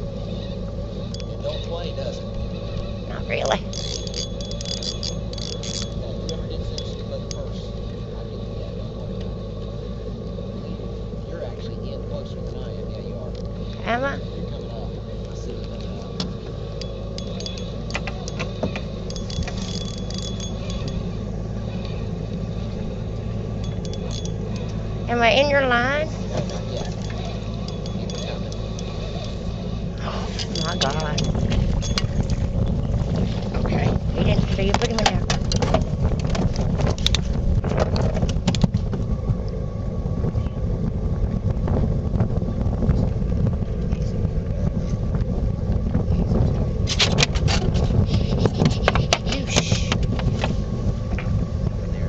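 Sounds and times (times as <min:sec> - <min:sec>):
boat engine idling: 0:00.0 - 0:52.0
faint steady hum: 0:00.0 - 0:52.0
wind buffeting microphone: 0:00.0 - 0:52.0
sharp clicks and clinks: 0:03.7 - 0:07.5, 0:16.8 - 0:21.0, 0:23.6 - 0:24.8, 0:26.4 - 0:29.4, 0:30.4 - 0:32.4.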